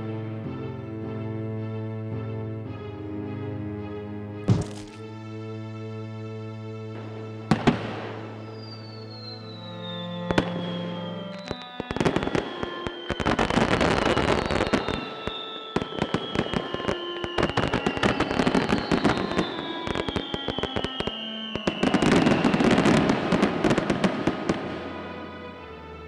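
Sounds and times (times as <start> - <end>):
held music notes: 0.0 - 26.0
fireworks crackling and popping: 4.5 - 5.0, 10.3 - 24.9
high falling firework whistle: 7.5 - 25.0.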